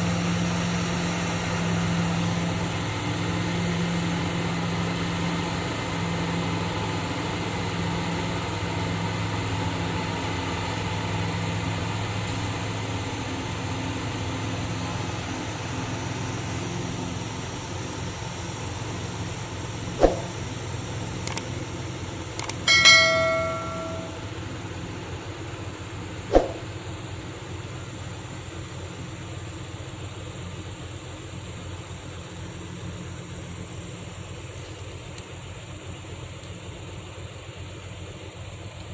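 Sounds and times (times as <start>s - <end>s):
lorry diesel engine running: 0.0s - 38.9s
sharp metallic clanks: 22.4s - 24.3s.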